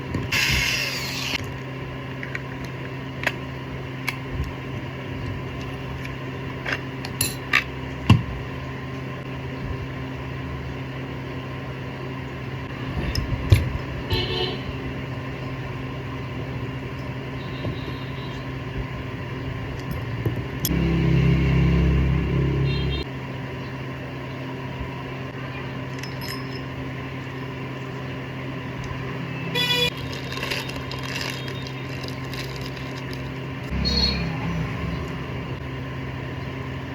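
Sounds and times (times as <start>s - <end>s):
electrical hum: 0.0s - 36.9s
louder low hum: 7.7s - 25.4s, 33.2s - 36.9s.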